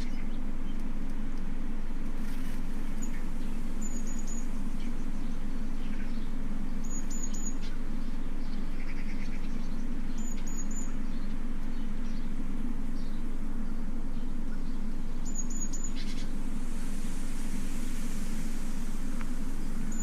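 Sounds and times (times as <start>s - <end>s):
steady low hum: 0.0s - 20.0s
bird chirping: 2.6s - 12.4s, 14.2s - 20.0s.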